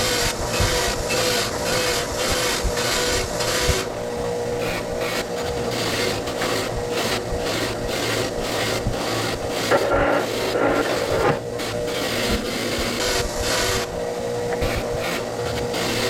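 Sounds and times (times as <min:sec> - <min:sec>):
wire wheel humming: 0:00.0 - 0:16.0.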